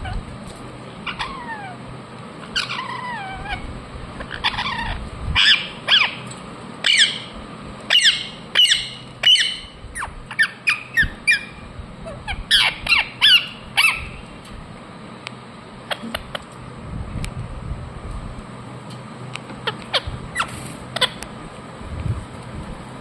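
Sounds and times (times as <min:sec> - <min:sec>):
parrot squawking: 0:01.0 - 0:01.8, 0:02.4 - 0:06.2, 0:06.8 - 0:14.3, 0:15.8 - 0:16.4, 0:19.6 - 0:21.3.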